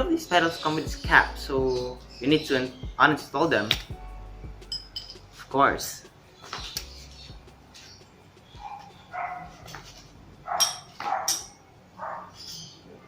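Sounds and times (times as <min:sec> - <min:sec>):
dog barking: 0:08.6 - 0:09.6, 0:10.5 - 0:12.4.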